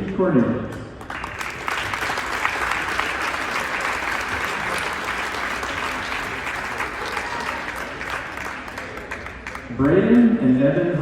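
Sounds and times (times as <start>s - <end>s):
audience clapping: 0.7s - 9.9s.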